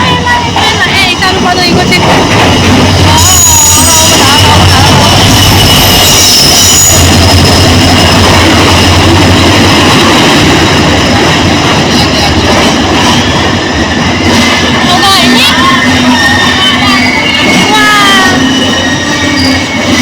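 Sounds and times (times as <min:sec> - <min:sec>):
train wheels running on rails: 0:00.0 - 0:20.0
high-pitched wheel squeal: 0:02.9 - 0:04.6, 0:05.8 - 0:07.6, 0:13.0 - 0:20.0.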